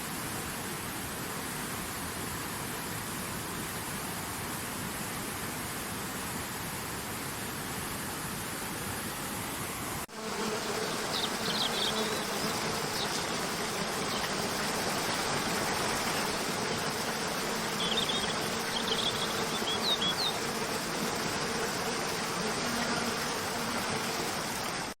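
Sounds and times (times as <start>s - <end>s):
rushing falling water: 0.0s - 10.1s, 11.2s - 25.0s
low buzzing hum: 9.1s - 24.9s
high bird chirps: 17.8s - 20.4s.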